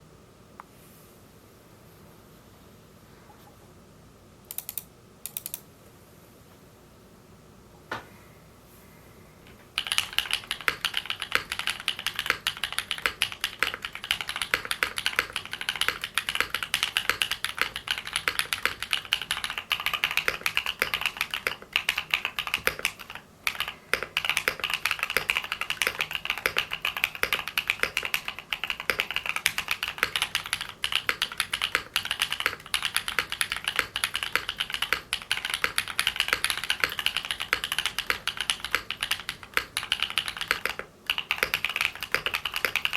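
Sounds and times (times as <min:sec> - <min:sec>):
fast typing on mechanical keyboard: 0:09.8 - 0:42.9.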